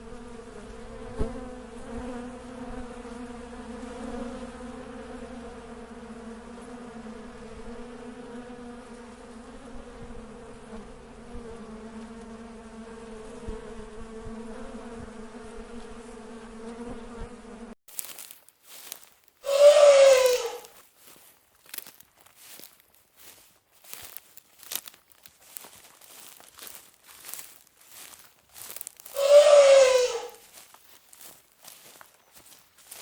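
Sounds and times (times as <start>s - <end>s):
insect swarm buzzing: 0.0s - 33.0s
loud short cry: 19.4s - 20.7s, 29.2s - 30.4s.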